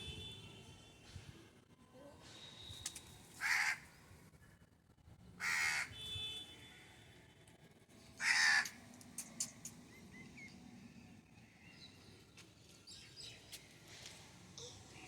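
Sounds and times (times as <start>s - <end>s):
crow cawing: 3.4s - 3.8s, 5.4s - 5.9s, 8.2s - 8.8s.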